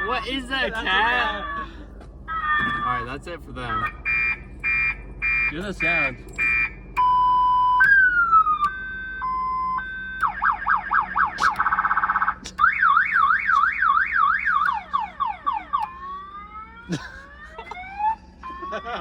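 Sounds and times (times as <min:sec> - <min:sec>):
electronic horn car-alarm sound: 0:00.0 - 0:01.7, 0:02.3 - 0:03.1, 0:03.7 - 0:16.0.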